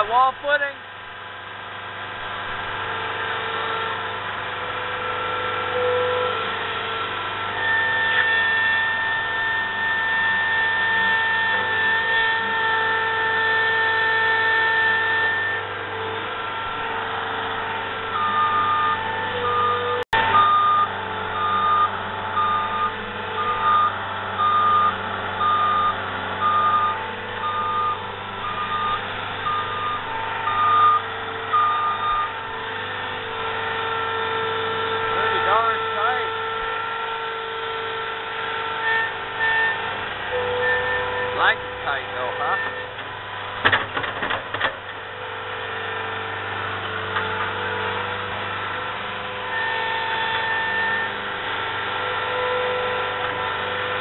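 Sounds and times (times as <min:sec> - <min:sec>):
diesel engine running: 0:00.0 - 0:54.0
backup alarm beeping: 0:18.1 - 0:32.5.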